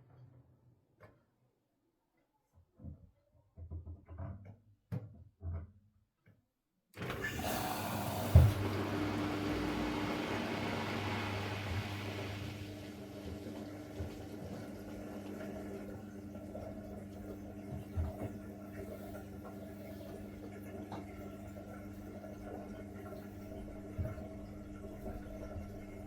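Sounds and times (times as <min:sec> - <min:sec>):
washing machine water rushing: 0:07.0 - 0:26.0.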